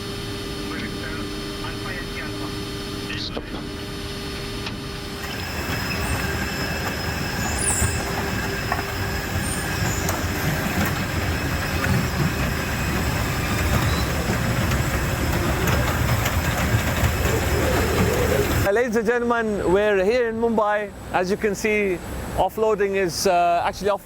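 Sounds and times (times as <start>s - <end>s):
jet engines: 0.0s - 18.7s
ground equipment rumble: 3.2s - 18.7s.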